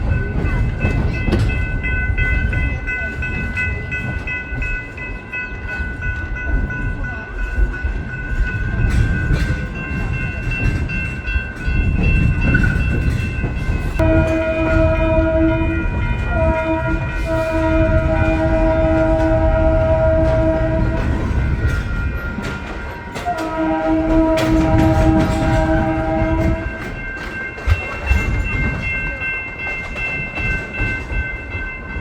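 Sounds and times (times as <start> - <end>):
train rumbling: 0.0 - 32.0
train horn blast: 14.0 - 21.5, 23.2 - 26.9.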